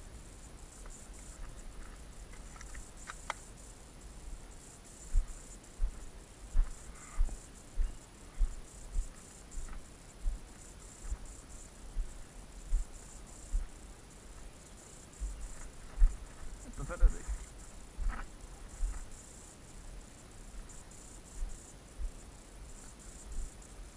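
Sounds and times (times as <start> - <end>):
insects chirping: 0.0 - 23.9
footsteps walking: 5.1 - 8.5, 15.2 - 16.5, 18.0 - 19.0.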